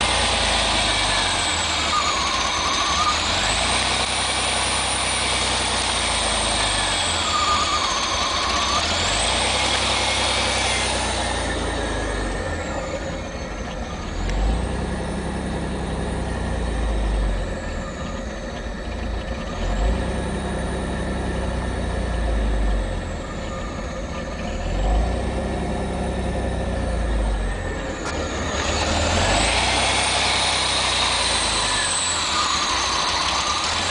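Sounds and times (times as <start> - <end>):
car engine idling roughly: 0.0 - 33.9
high-pitched whine: 0.0 - 33.9.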